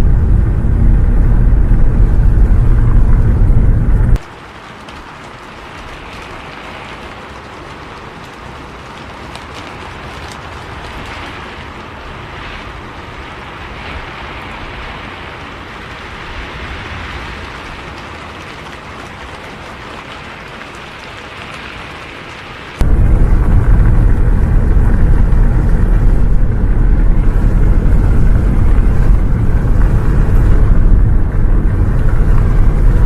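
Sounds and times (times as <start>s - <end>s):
bus engine rumble: 0.0s - 4.2s, 22.8s - 33.0s
rain on bus windows and roof: 0.0s - 33.0s.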